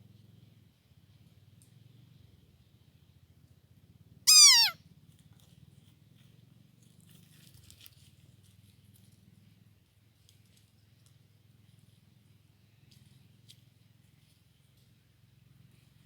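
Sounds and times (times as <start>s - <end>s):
animal cry falling in pitch: 4.3s - 4.8s
faint ticks: 10.2s - 12.0s.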